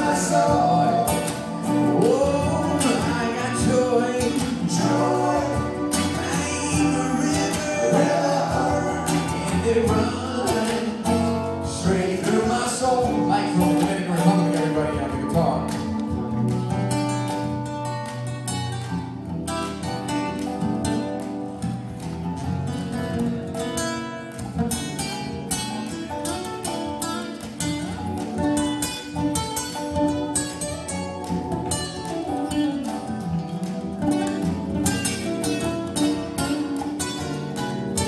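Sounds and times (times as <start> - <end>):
acoustic guitar: 0.0 - 38.0
bass: 0.0 - 38.0
keyboard: 0.0 - 38.0.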